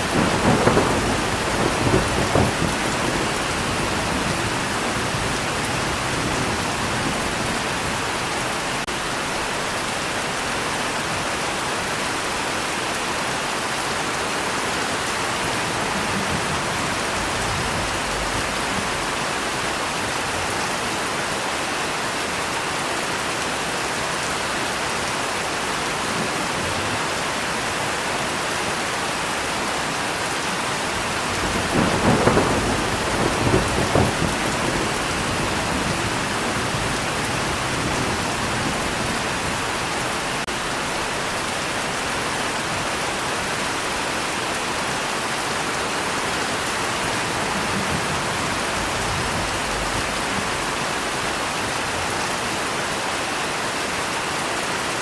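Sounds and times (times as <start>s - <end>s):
thunder rumbling: 0.0s - 9.1s, 15.0s - 19.6s, 31.0s - 41.4s, 46.6s - 51.2s
heavy rain falling: 0.0s - 55.0s.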